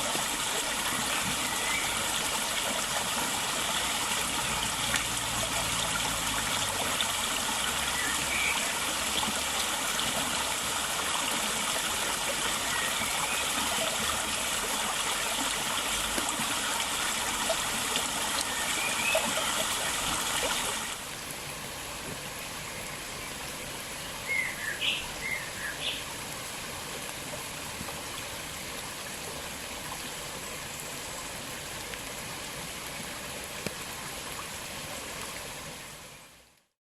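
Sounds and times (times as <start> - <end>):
river water flowing: 0.0 - 36.6
songbirds calling: 24.0 - 26.1.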